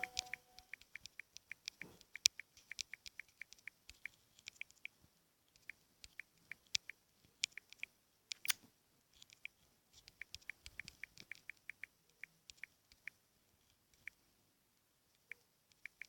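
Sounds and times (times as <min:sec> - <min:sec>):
sharp click: 0:00.0 - 0:03.6.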